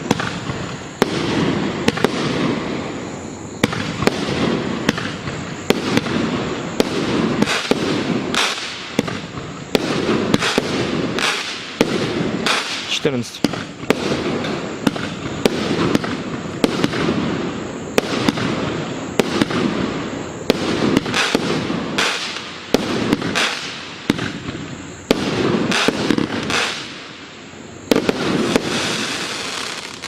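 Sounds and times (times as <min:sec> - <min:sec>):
fireworks bangs: 0:00.0 - 0:30.0
fireworks crackle: 0:00.0 - 0:30.0.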